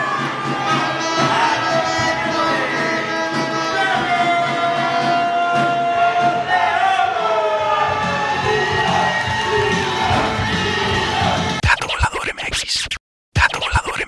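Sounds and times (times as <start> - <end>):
music with sliding held notes: 0.0 - 5.6.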